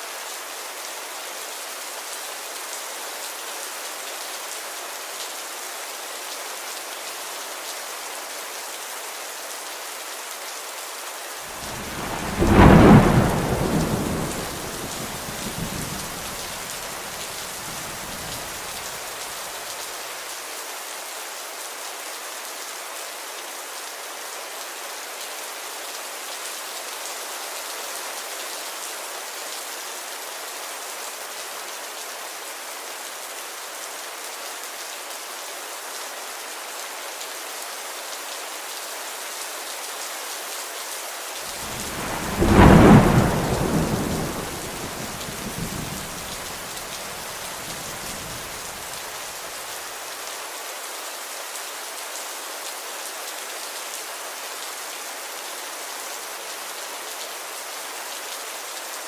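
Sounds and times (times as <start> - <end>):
steady rain hissing: 0.0 - 59.0
thunder rumble: 11.6 - 18.8, 41.5 - 48.9.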